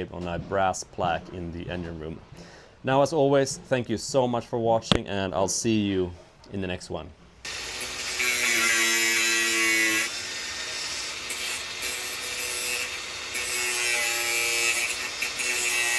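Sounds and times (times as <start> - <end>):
power tool cutting wood: 7.5 - 15.9.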